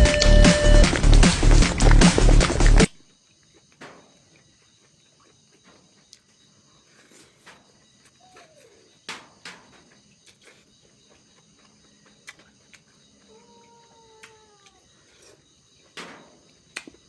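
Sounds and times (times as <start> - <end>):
short rising and falling tone: 0.0 - 2.7
chewing smacks and clicks: 11.4 - 13.0.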